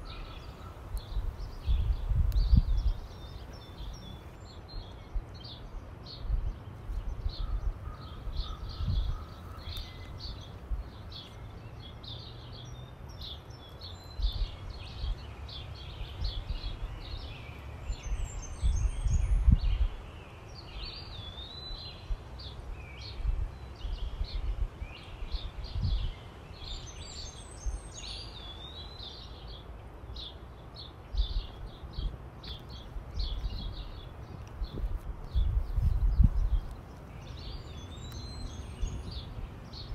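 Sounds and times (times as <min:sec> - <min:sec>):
wind buffeting microphone: 0:00.0 - 0:11.4, 0:16.0 - 0:20.1, 0:23.1 - 0:28.0, 0:31.0 - 0:39.9
high falling bird calls: 0:00.0 - 0:39.9
wild birds chirping and singing: 0:00.0 - 0:39.9.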